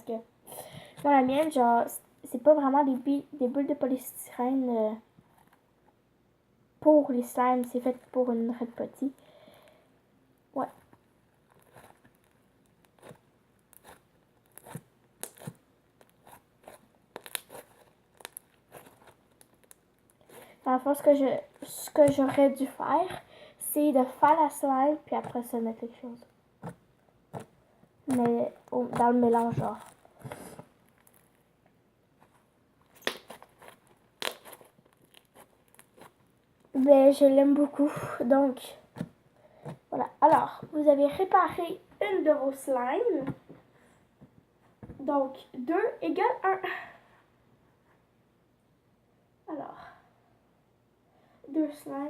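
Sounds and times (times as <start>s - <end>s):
slime crunching and crackling: 11.4s - 23.2s, 26.6s - 31.4s, 32.2s - 36.9s.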